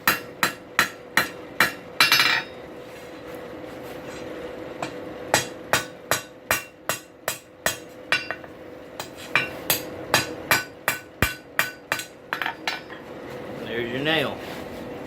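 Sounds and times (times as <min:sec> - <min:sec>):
hammer striking steel on anvil: 0:00.0 - 0:02.6, 0:04.8 - 0:13.0
steady hum: 0:00.0 - 0:15.0.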